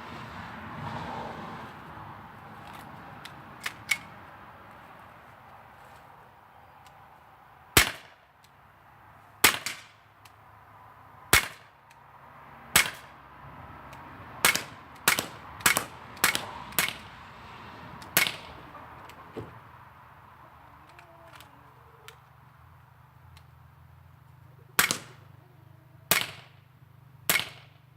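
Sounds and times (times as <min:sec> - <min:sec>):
air pistol cracks: 0:14.4 - 0:17.0, 0:18.0 - 0:18.5, 0:24.8 - 0:25.3, 0:26.1 - 0:26.6, 0:27.3 - 0:27.8.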